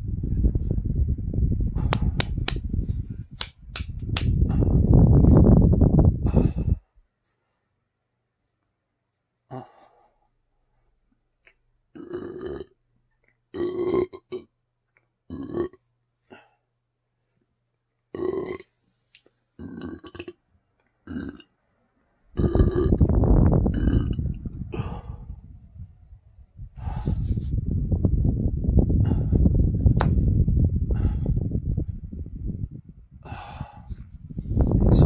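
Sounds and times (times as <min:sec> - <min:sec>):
person burping: 0:11.9 - 0:12.8, 0:13.5 - 0:14.5, 0:15.3 - 0:15.8, 0:18.2 - 0:18.7, 0:19.6 - 0:20.4, 0:21.0 - 0:21.5, 0:22.4 - 0:23.1, 0:23.7 - 0:25.2.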